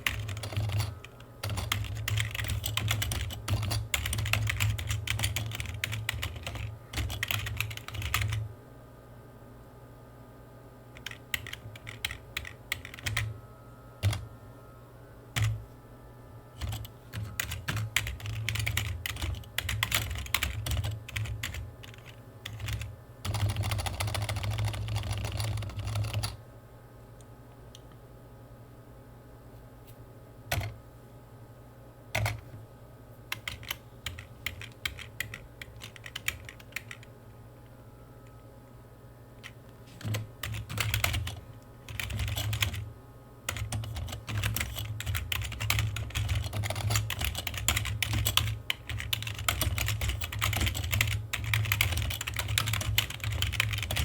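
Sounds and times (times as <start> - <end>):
typing on computer keyboard: 0.0 - 8.4, 11.0 - 13.3, 14.0 - 14.2, 15.4 - 15.6, 16.6 - 26.4, 30.5 - 30.8, 32.1 - 32.4, 33.3 - 37.1, 39.4 - 42.8, 43.5 - 54.0.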